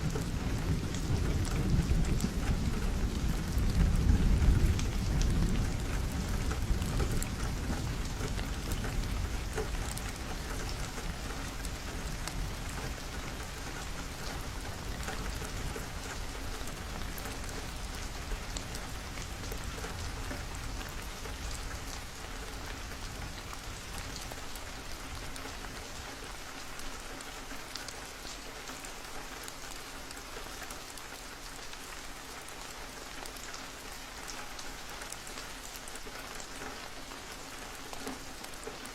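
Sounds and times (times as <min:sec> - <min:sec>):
low rumble of thunder: 0:00.0 - 0:26.0
rain drops tapping on a window: 0:00.0 - 0:38.9.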